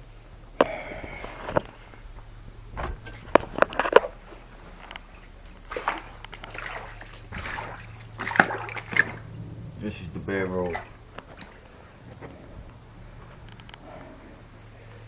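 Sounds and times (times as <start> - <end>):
steady low hum: 0.0 - 15.0
footsteps splashing through water: 2.9 - 9.4, 10.6 - 13.5.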